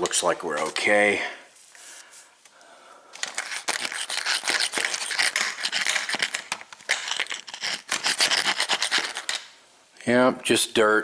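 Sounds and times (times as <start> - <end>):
hands scratching and rustling: 3.2 - 9.5.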